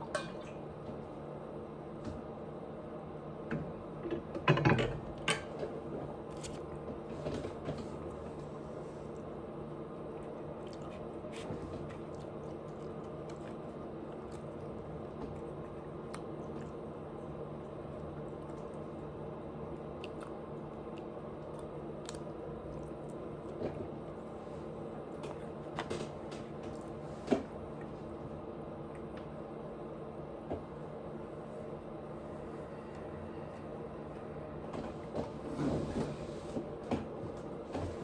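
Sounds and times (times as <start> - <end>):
steady low hum: 0.0 - 38.0
chewing and biting food: 10.0 - 24.0.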